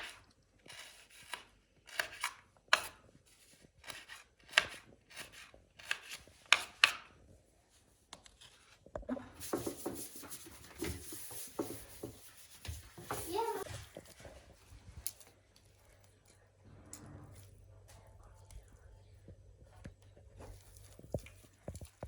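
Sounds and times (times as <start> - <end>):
knife chopping on cutting board: 0.0 - 3.0, 3.8 - 7.1.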